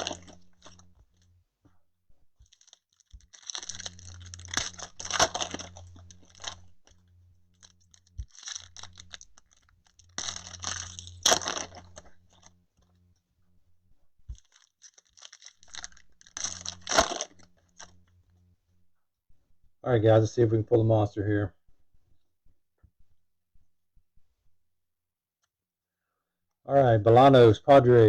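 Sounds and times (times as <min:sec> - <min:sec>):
foil wrappers crinkling and tearing: 0:00.0 - 0:01.2, 0:02.4 - 0:12.5, 0:14.3 - 0:18.1.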